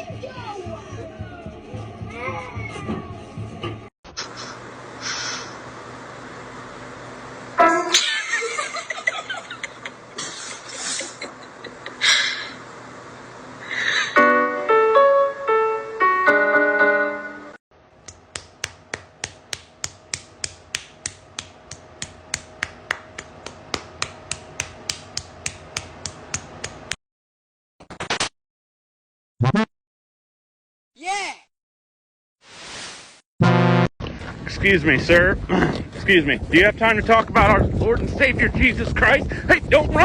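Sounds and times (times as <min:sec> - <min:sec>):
keyboard notes: 0:14.2 - 0:17.6, 0:29.4 - 0:29.7
snapping click beat: 0:18.0 - 0:26.9.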